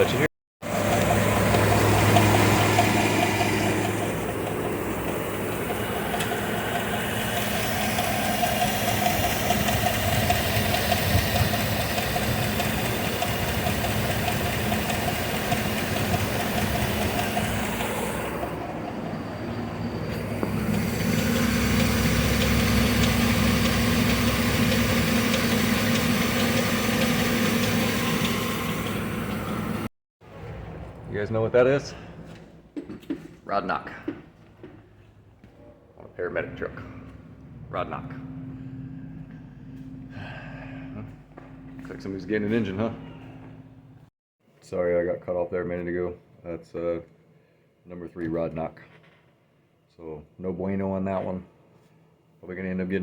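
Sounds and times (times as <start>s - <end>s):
truck engine idling with knock: 0.0s - 29.9s.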